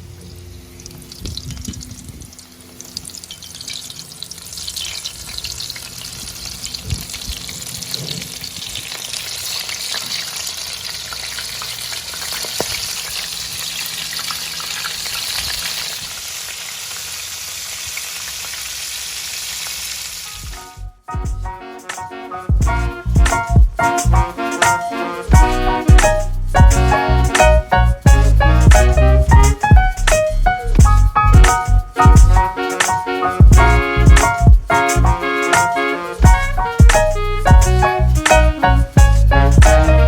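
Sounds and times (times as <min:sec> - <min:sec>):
oysters sizzling in hot oil: 0:00.3 - 0:20.4.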